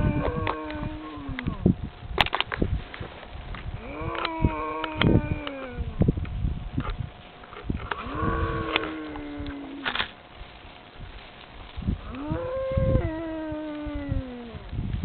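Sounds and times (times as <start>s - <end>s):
cattle mooing: 3.8s - 5.8s, 7.9s - 10.0s.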